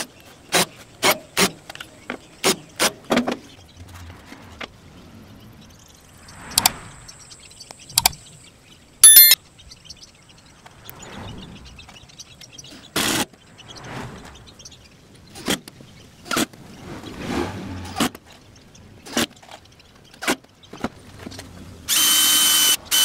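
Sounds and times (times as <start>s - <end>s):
power drill whining: 21.9s - 23.0s.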